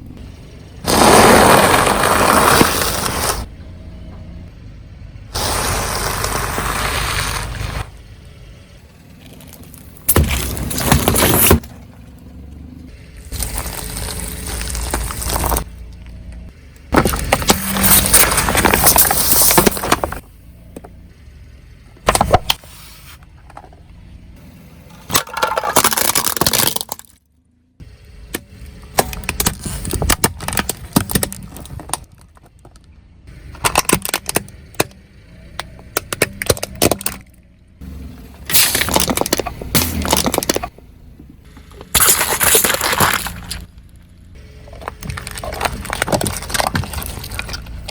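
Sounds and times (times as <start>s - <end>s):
objects crushed under car tyres: 0.8s - 3.5s, 5.4s - 7.9s, 9.2s - 12.0s, 13.3s - 20.9s, 24.9s - 27.3s, 28.8s - 37.4s, 38.0s - 40.8s, 41.4s - 47.9s
sharp crack: 38.4s - 40.8s.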